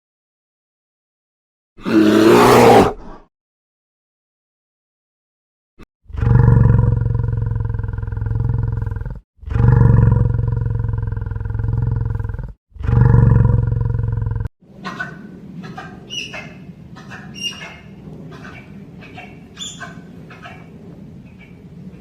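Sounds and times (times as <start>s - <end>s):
large animal roaring: 1.8s - 3.2s, 6.1s - 14.5s.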